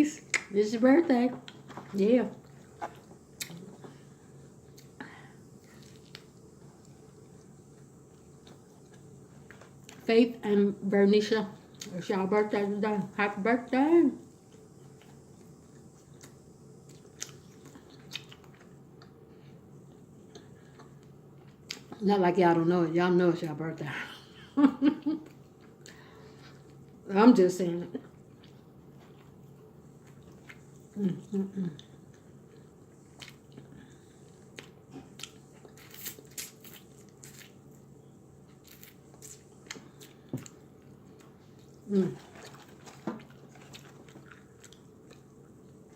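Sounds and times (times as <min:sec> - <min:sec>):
person chewing food: 0:01.4 - 0:10.1, 0:14.3 - 0:22.0, 0:28.0 - 0:45.9.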